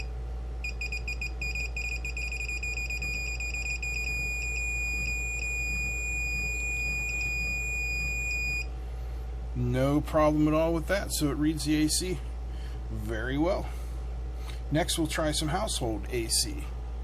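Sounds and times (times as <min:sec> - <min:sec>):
low mains hum: 0:00.0 - 0:17.0
electronic beeper beeping: 0:00.7 - 0:08.7.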